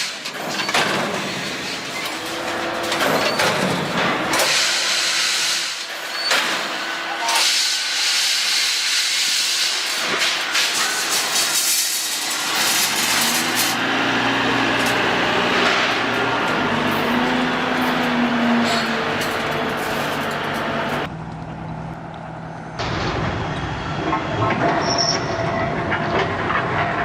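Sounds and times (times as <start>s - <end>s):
low motor hum: 12.9s - 24.6s.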